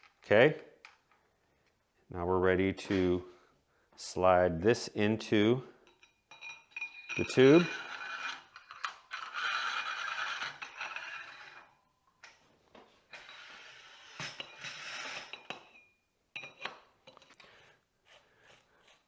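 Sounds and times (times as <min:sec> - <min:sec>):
light metal knocks and clinks: 0:05.8 - 0:07.7
metal tubes rubbing: 0:05.9 - 0:11.8, 0:13.1 - 0:15.6.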